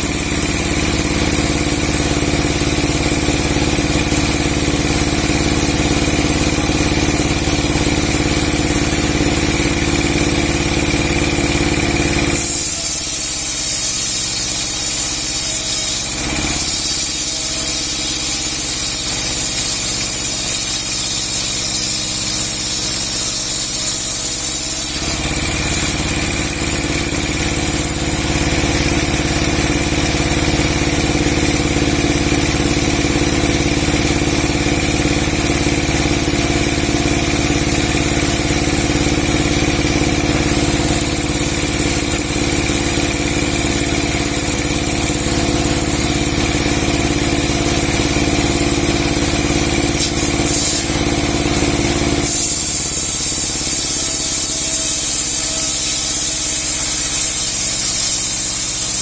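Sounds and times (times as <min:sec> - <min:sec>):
log-sawing machine humming: 0:00.0 - 0:59.0
high saw hiss: 0:01.9 - 0:31.1, 0:42.5 - 0:59.0.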